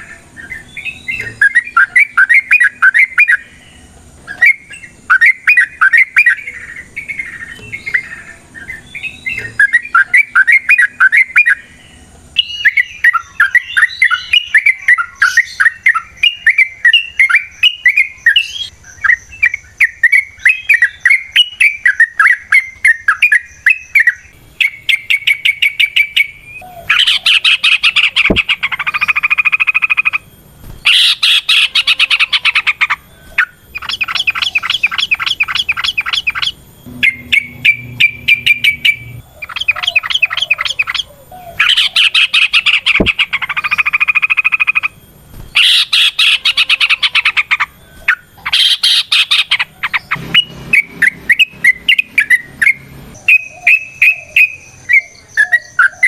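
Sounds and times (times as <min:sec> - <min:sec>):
birds chattering song: 0:00.0 - 0:56.0.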